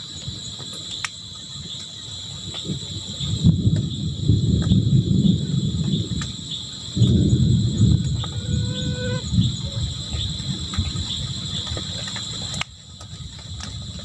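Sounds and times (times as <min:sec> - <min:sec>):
high insect trill: 0:00.0 - 0:14.0
cattle mooing: 0:08.0 - 0:09.3.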